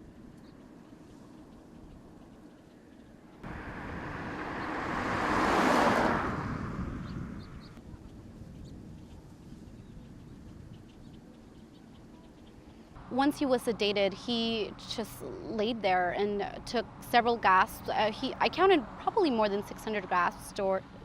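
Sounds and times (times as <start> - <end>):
vehicle driving past: 3.4 - 7.8.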